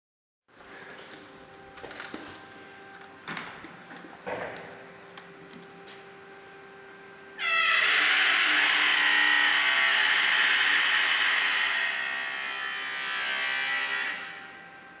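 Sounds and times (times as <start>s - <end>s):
door squeaking loudly: 7.4s - 11.0s.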